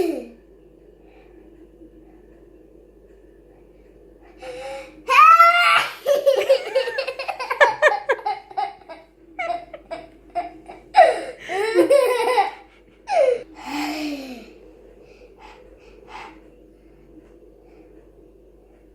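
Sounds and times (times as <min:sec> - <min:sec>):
child laughing: 0:05.2 - 0:14.2
gasping breaths: 0:13.1 - 0:16.6.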